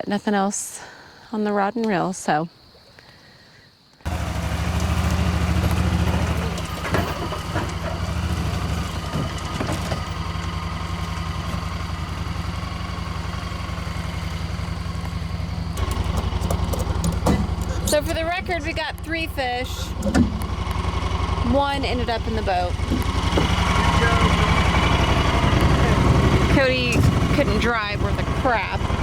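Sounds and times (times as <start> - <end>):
vehicle engine droning: 4.1 - 29.0
faint knocks: 22.7 - 27.6.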